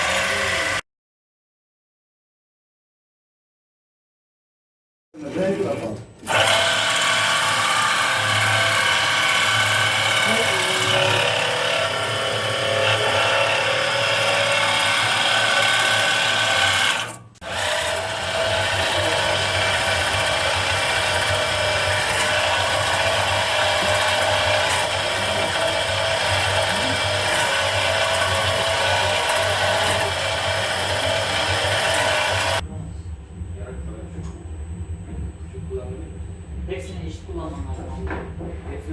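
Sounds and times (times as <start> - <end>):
cnc machine whining and grinding: 6.3 - 32.6.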